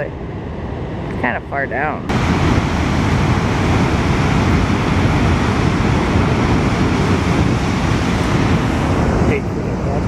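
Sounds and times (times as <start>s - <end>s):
wind buffeting microphone: 0.0s - 10.0s
rushing waterfall: 2.1s - 10.0s.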